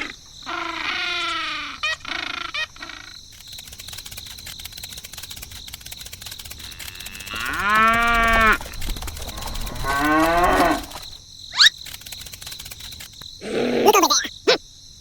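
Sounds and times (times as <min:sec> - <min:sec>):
cow mooing: 0:06.9 - 0:08.6, 0:09.6 - 0:11.0.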